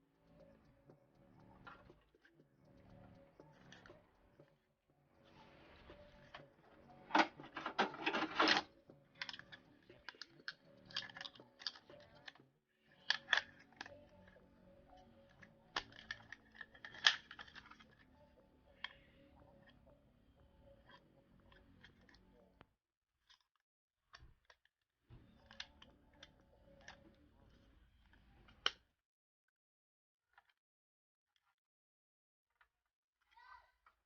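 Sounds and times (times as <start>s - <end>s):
computer hardware clicks and rattles: 6.2s - 12.4s.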